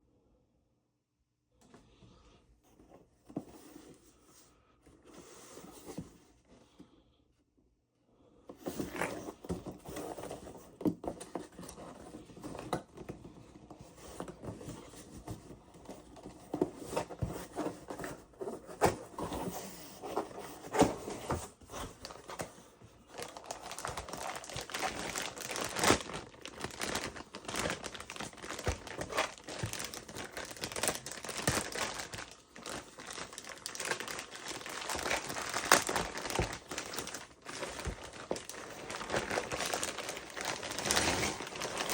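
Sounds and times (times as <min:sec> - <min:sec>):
packaging crinkling and rustling: 0:08.6 - 0:41.9.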